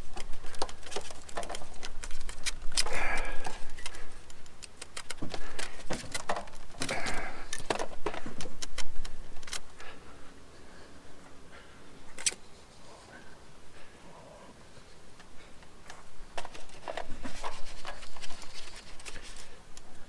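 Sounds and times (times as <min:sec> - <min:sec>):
small parts and tools clattering: 0:00.0 - 0:09.7.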